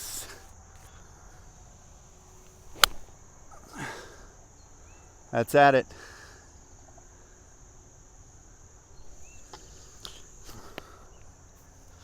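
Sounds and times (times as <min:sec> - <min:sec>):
crickets trilling: 0:08.7 - 0:12.0.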